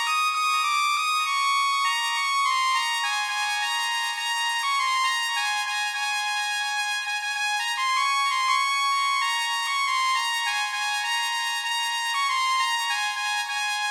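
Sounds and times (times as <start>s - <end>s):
trumpet-like melody: 0.0s - 13.9s.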